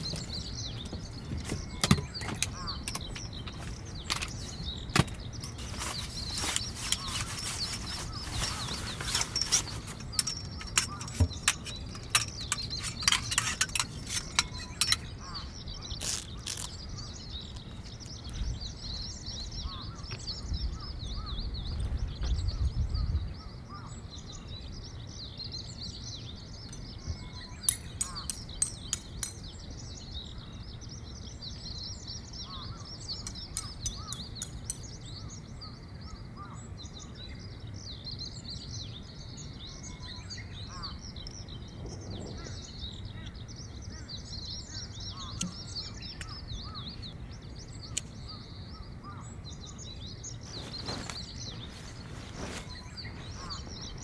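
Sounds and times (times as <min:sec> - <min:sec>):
sharp clicks and knocks: 0:00.0 - 0:15.4
birds chirping: 0:00.0 - 0:54.0.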